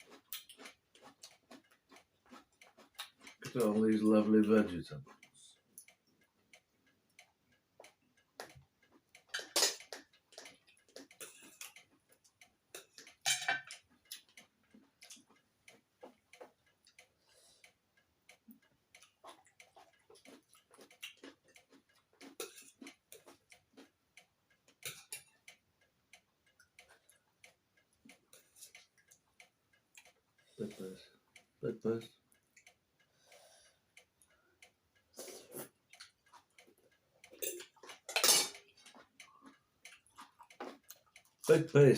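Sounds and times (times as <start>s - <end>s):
mouth clicks from chewing: 0.0s - 3.6s, 7.2s - 25.6s, 34.0s - 41.5s
crunches of biting: 9.3s - 11.9s.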